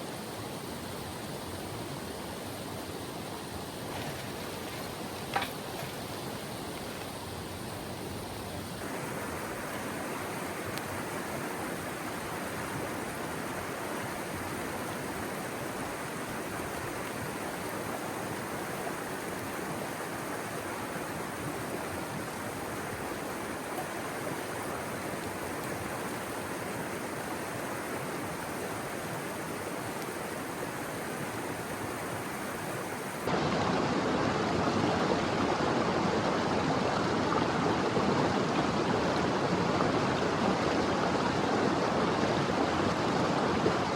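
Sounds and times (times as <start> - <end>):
mountain river rushing: 0.0 - 43.9.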